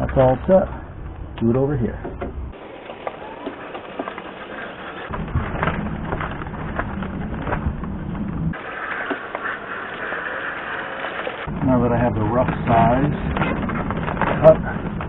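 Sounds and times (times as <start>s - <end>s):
low steady hum: 0.0s - 2.6s, 4.9s - 8.6s
plastic sheet crinkling: 2.6s - 15.0s.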